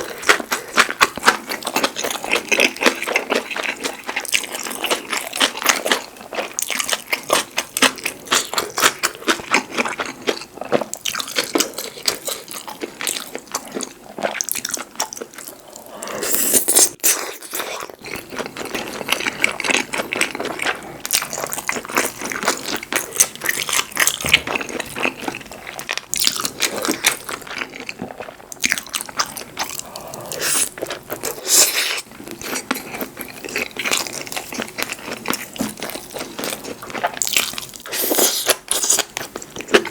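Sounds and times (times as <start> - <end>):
chewing and crunching: 0.0 - 39.9.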